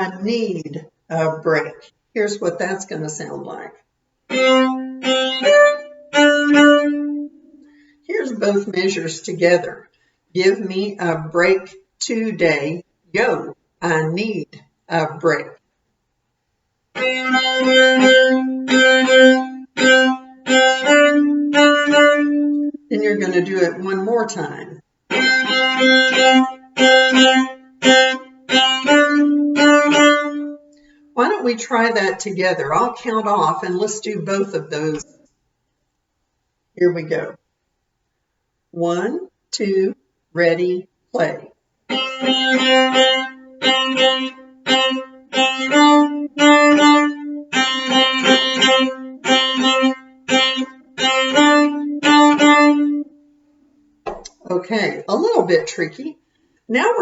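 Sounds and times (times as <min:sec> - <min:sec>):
cello bowed notes: 0:04.3 - 0:09.1, 0:16.9 - 0:24.1, 0:25.1 - 0:31.4, 0:41.9 - 0:53.2.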